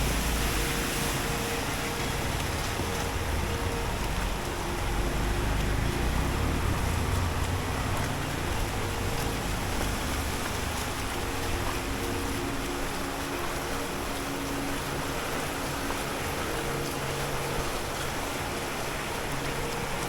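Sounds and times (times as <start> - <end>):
hiss of tyres on wet pavement: 0.0 - 13.3
vehicle engines humming: 0.0 - 20.0.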